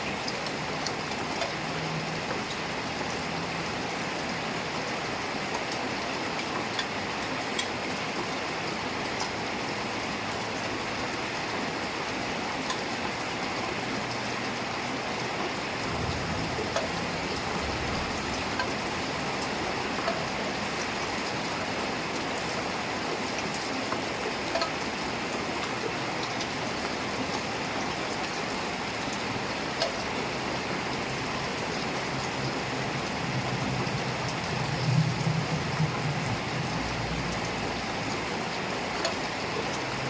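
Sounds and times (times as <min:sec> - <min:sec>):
heavy rain falling: 0:00.0 - 0:40.0.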